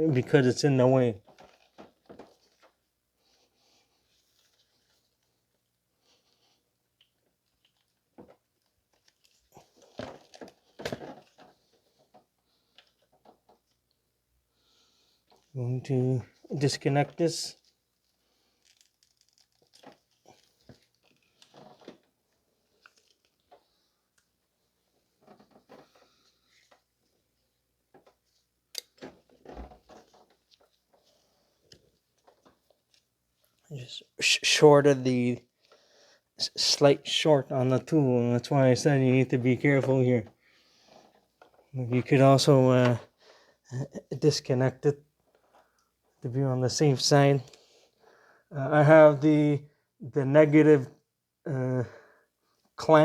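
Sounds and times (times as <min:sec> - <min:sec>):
light clicks and rustles: 0:01.2 - 0:14.0, 0:17.5 - 0:33.7.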